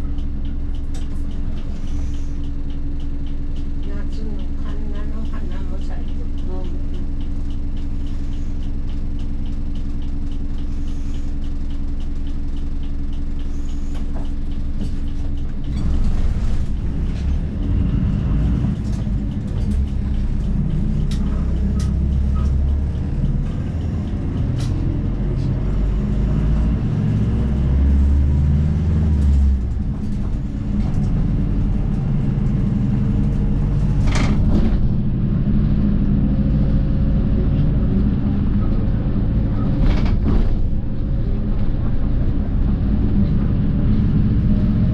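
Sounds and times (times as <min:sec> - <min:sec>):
light regular ticking: 0:00.0 - 0:34.0
bus diesel engine: 0:00.0 - 0:44.9.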